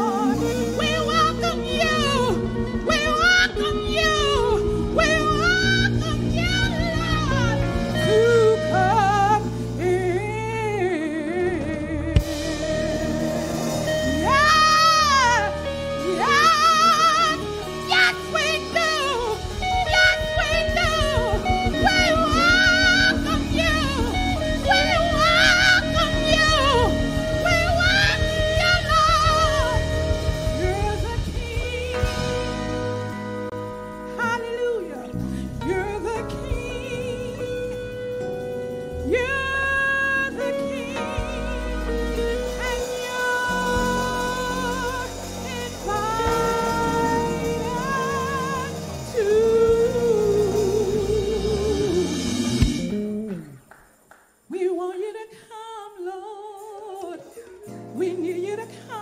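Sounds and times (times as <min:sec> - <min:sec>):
solo voice singing: 0:00.0 - 0:33.1, 0:34.1 - 0:53.5
sustained chords: 0:00.0 - 0:34.2
steady bass: 0:00.0 - 0:53.6.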